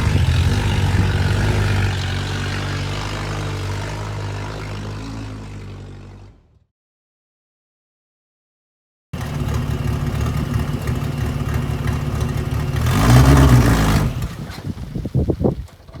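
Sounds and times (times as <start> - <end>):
car engine running and revving: 0.0 - 6.6, 9.2 - 15.0.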